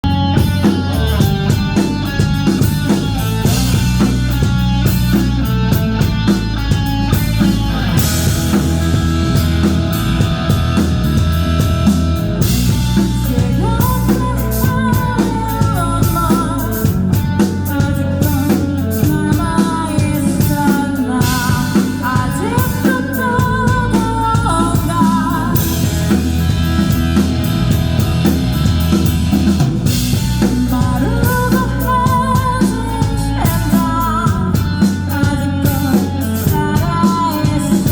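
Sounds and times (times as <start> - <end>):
person singing: 0.0 - 4.4, 12.4 - 26.3, 30.4 - 37.9
rock band playing: 0.0 - 37.9.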